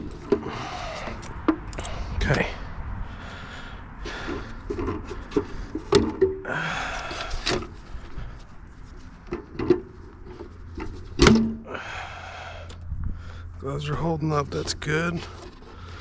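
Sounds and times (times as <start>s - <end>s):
scraping and rustling: 6.9s - 11.3s, 13.9s - 16.0s.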